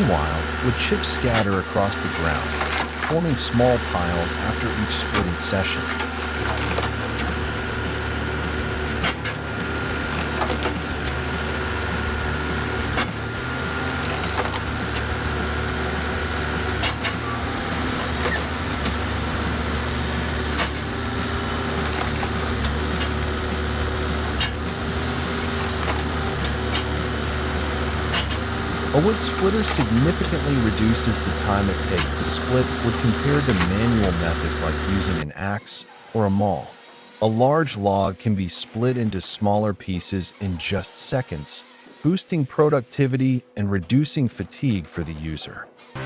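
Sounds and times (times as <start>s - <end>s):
wood splitter drone: 0.0s - 43.4s, 44.4s - 46.0s
wood cracking as it splits: 1.0s - 35.0s.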